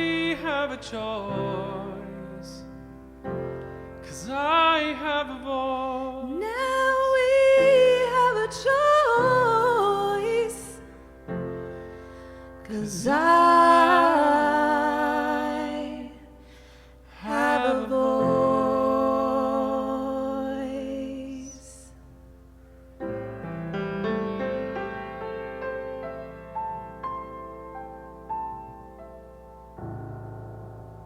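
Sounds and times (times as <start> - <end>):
wordless singing with vibrato: 0.0 - 22.2.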